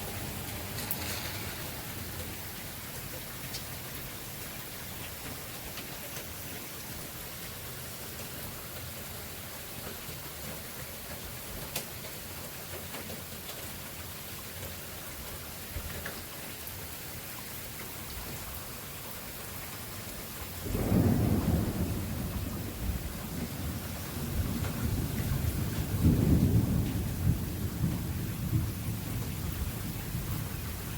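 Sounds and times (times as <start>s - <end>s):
thunder rumble: 0.0s - 2.6s, 20.6s - 30.9s
heavy rain hiss: 0.0s - 30.9s
raindrop ticks: 0.5s - 4.2s, 4.9s - 6.7s, 8.0s - 9.2s, 9.8s - 16.8s, 19.5s - 29.7s.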